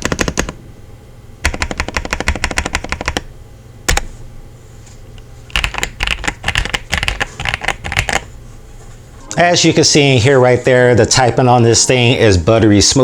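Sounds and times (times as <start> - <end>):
mechanical keyboard typing: 0.0 - 0.6, 1.4 - 3.3, 3.9 - 4.1, 5.5 - 8.3.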